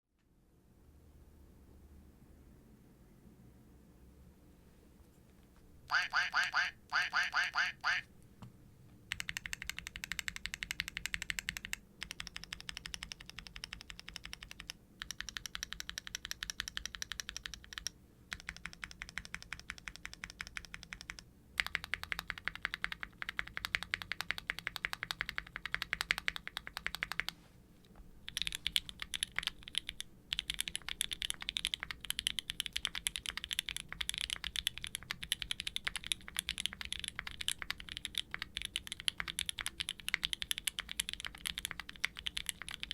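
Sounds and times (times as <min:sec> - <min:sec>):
typing on mechanical keyboard: 0:09.1 - 0:27.4, 0:28.2 - 0:42.9.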